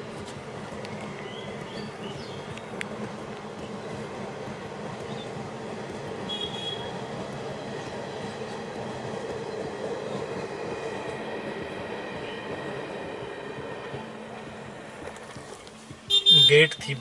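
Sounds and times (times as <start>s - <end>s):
train rumbling on rails: 0.0s - 17.0s
high wheel squeal: 6.2s - 7.0s.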